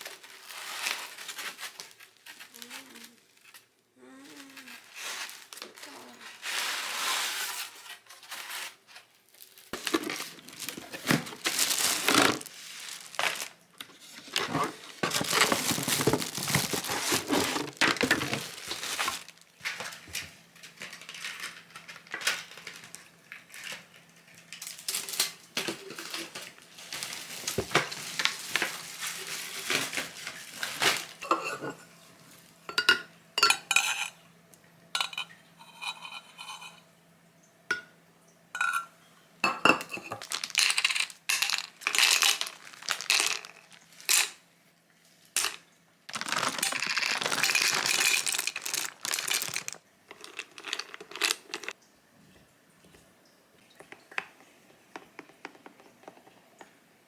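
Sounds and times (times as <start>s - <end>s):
rustling and crinkling: 0.0s - 32.4s, 39.8s - 44.4s, 45.4s - 53.1s
dishes and utensils clattering: 29.7s - 32.0s, 32.7s - 34.2s, 35.0s - 36.8s, 38.6s - 44.4s.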